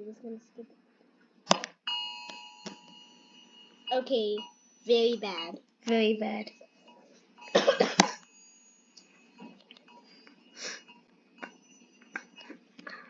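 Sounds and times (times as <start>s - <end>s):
quiet breaths: 12.4s - 13.0s.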